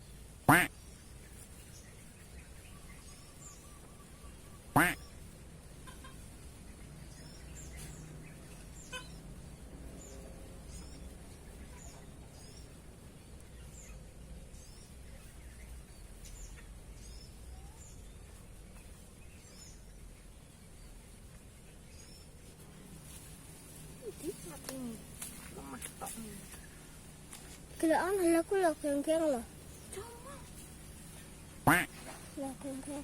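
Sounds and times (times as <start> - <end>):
small bird chirping: 0.0 - 9.4, 10.0 - 33.0
low outdoor rumble: 0.0 - 33.0.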